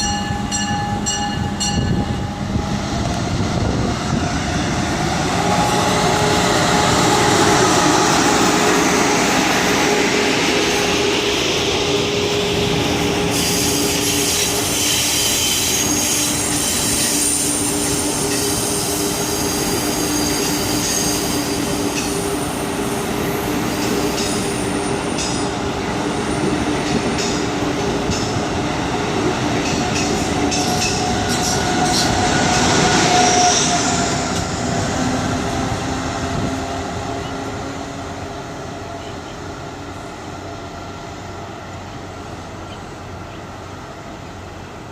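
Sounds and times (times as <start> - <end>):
train low hum: 0.0 - 44.9
high wheel squeal: 13.0 - 22.6.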